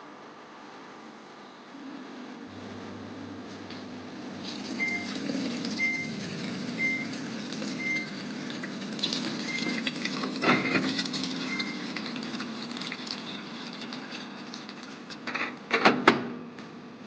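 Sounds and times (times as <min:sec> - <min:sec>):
low steady hum: 0:00.0 - 0:15.4
washing machine beeping: 0:04.2 - 0:12.6.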